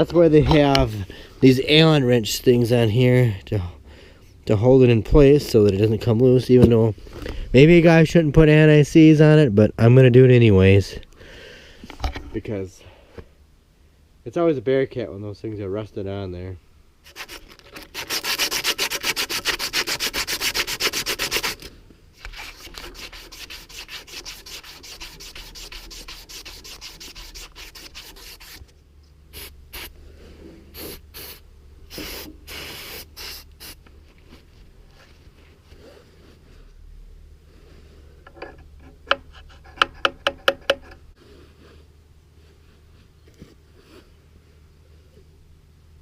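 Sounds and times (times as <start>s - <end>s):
emery cloth rubbing metal: 17.0s - 28.6s.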